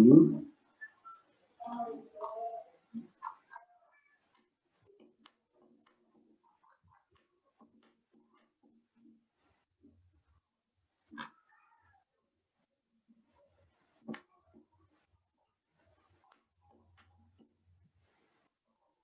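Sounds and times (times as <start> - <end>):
computer mouse clicks: 1.6 - 1.9, 9.6 - 13.0, 18.3 - 19.0.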